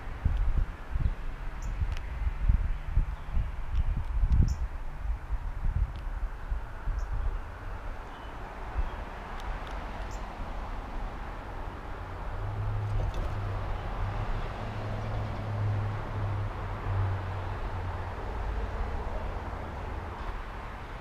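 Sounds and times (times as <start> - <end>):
outdoor background noise: 0.0 - 21.0
passing vehicle engine hum: 6.6 - 21.0.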